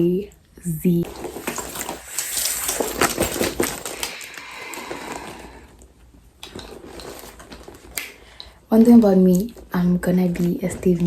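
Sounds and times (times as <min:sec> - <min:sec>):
packaging rustling and crinkling: 0:01.0 - 0:08.6.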